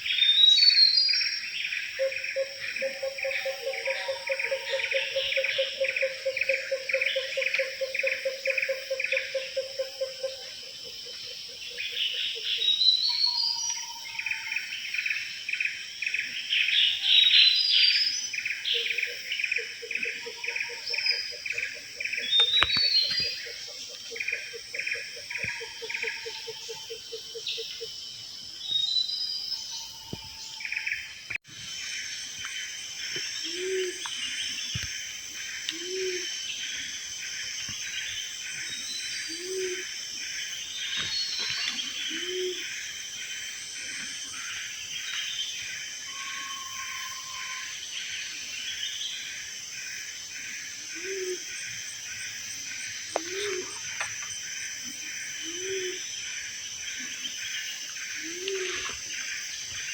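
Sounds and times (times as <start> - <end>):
insects: 0.0 - 59.9
birds calling: 18.7 - 27.9.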